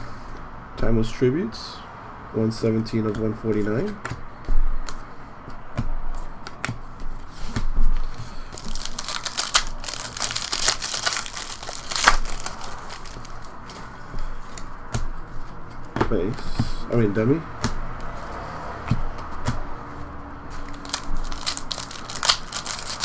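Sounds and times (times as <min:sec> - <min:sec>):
cards being handled: 0:03.1 - 0:23.0
wrapper crinkling and tearing: 0:08.6 - 0:13.8, 0:20.6 - 0:23.0.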